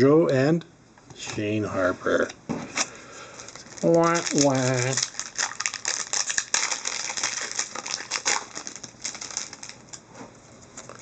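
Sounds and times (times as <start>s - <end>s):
foil wrapper crinkling: 2.7s - 10.1s.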